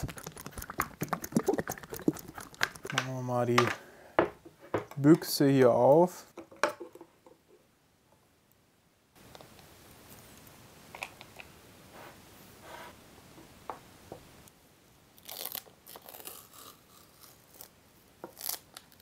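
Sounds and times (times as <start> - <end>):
paint tin clicks and scraping: 0.0 - 3.8.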